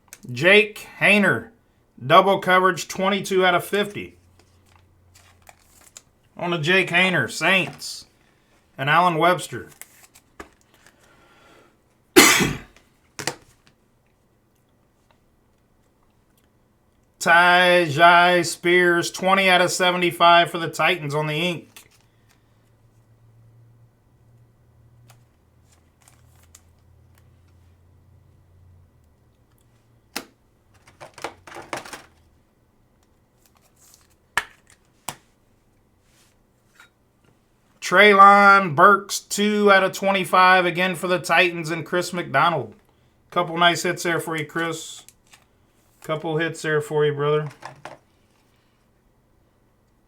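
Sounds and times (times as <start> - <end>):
cards rustling and sliding: 4.3 - 6.1, 7.4 - 7.9, 9.6 - 11.1, 25.1 - 27.7, 33.0 - 35.4, 44.4 - 46.2
person coughing: 12.2 - 12.8.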